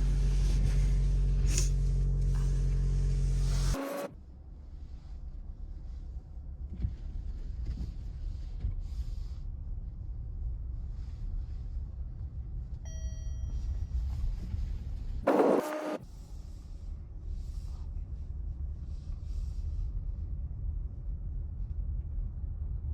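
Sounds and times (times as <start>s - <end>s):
car engine and road noise: 0.0s - 4.3s, 15.2s - 16.0s.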